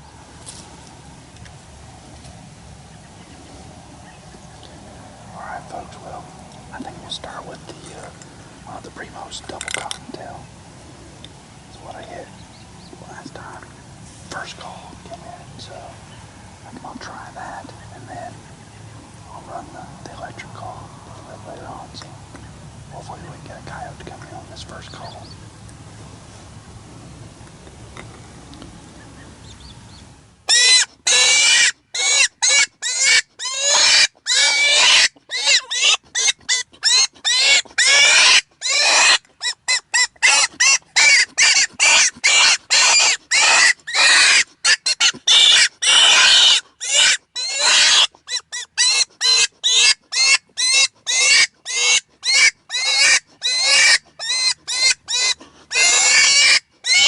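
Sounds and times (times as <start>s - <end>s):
predator call squeals: 30.5s - 57.0s.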